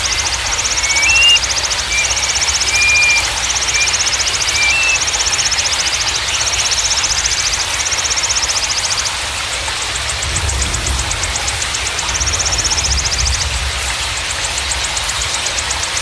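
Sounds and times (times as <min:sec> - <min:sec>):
whistled bird notes: 0:00.0 - 0:07.5
running water rushing: 0:00.0 - 0:08.6
high fast-pulsing trill: 0:00.8 - 0:05.5.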